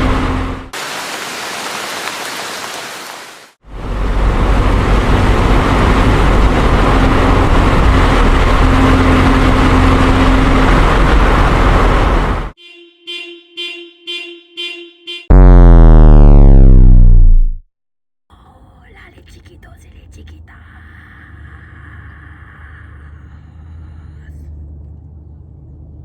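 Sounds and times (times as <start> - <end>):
vehicle rumble with road noise: 0.0 - 0.7, 3.6 - 12.6, 18.4 - 26.0.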